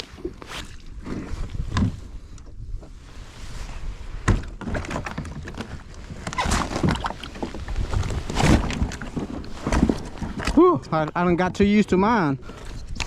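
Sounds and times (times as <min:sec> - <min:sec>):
knocks and thuds on plastic kayak: 0:04.2 - 0:11.8
water sloshing: 0:04.3 - 0:13.0.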